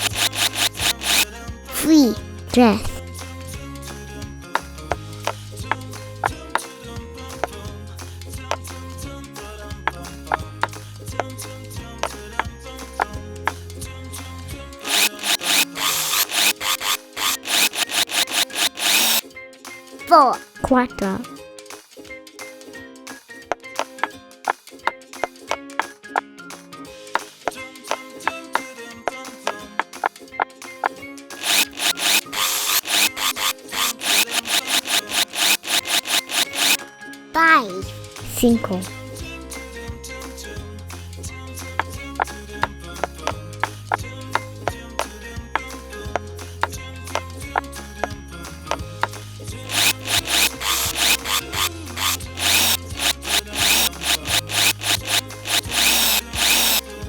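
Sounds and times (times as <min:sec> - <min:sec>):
toy drill rasping ratchet: 0:00.0 - 0:03.1, 0:14.2 - 0:19.3, 0:20.1 - 0:21.3, 0:31.3 - 0:36.8, 0:38.2 - 0:39.1, 0:43.0 - 0:47.3, 0:49.0 - 0:57.0
background music: 0:01.2 - 0:16.2, 0:19.2 - 0:31.5, 0:36.8 - 0:57.0
light clicks: 0:49.0 - 0:56.8.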